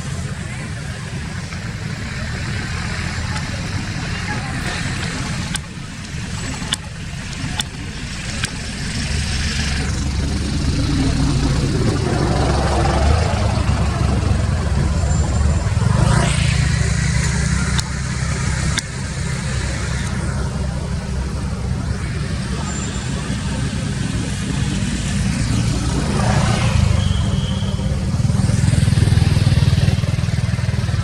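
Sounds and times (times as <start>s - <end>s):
vehicle passing: 0.0s - 31.0s
sharp clicks: 3.3s - 10.0s, 16.7s - 21.0s.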